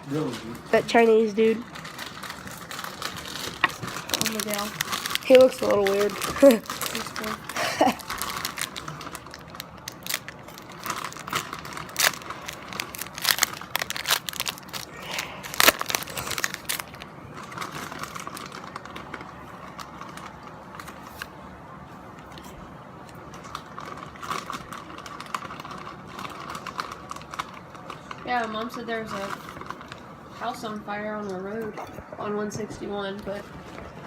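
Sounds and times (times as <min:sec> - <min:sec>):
card wrappers crinkling: 0:00.1 - 0:21.4, 0:22.2 - 0:30.8.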